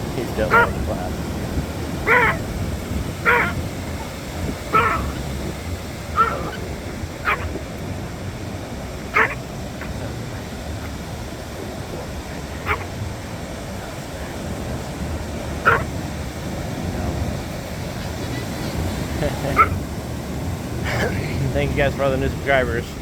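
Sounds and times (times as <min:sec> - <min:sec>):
steady low rumble: 0:00.0 - 0:23.0
dog barking in sharp yips: 0:00.5 - 0:00.8, 0:02.0 - 0:02.4, 0:03.2 - 0:03.6, 0:04.7 - 0:05.2, 0:06.2 - 0:07.6, 0:09.1 - 0:09.4, 0:12.6 - 0:12.9, 0:15.6 - 0:15.9, 0:19.6 - 0:19.8.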